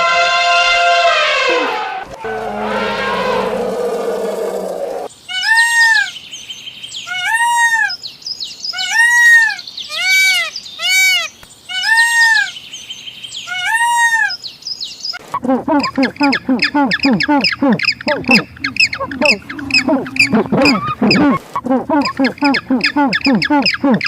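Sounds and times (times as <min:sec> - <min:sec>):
harsh low animal call: 0:01.2 - 0:05.1, 0:15.4 - 0:24.0
high whistled animal calls: 0:01.2 - 0:06.1, 0:15.4 - 0:24.0.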